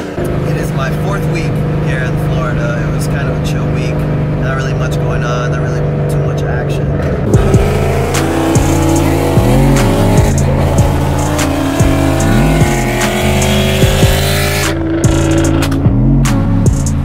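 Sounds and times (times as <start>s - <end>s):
bass-heavy backing music: 0.0s - 17.0s.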